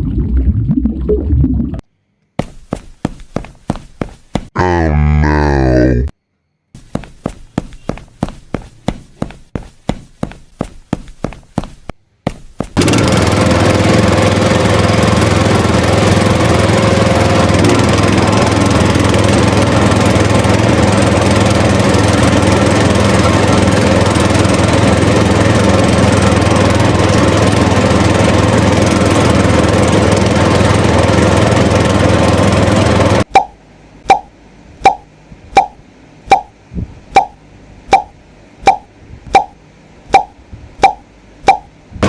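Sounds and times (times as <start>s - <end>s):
small engine running: 12.6s - 33.3s.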